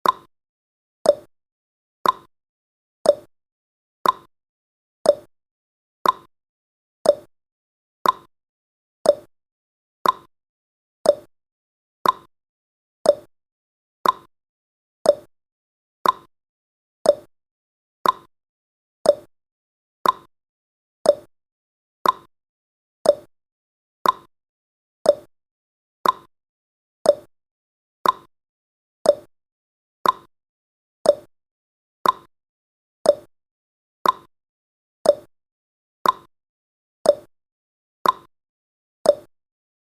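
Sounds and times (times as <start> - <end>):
countdown timer blips: 0.0 - 0.3, 1.0 - 1.3, 2.0 - 2.3, 3.0 - 3.3, 4.0 - 4.3, 5.0 - 5.3, 6.0 - 6.3, 7.0 - 7.3, 8.0 - 8.3, 9.0 - 9.3, 10.0 - 10.3, 11.0 - 11.3, 12.0 - 12.3, 13.0 - 13.3, 14.0 - 14.3, 15.0 - 15.3, 16.0 - 16.3, 17.0 - 17.3, 18.0 - 18.3, 19.0 - 19.3, 20.0 - 20.3, 21.0 - 21.3, 22.0 - 22.3, 23.0 - 23.3, 24.0 - 24.3, 25.0 - 25.3, 26.0 - 26.3, 27.0 - 27.3, 28.0 - 28.3, 29.0 - 29.3, 30.0 - 30.3, 31.0 - 31.3, 32.0 - 32.3, 33.0 - 33.3, 34.0 - 34.3, 35.0 - 35.3, 36.0 - 36.3, 37.0 - 37.3, 38.0 - 38.3, 39.1 - 39.3.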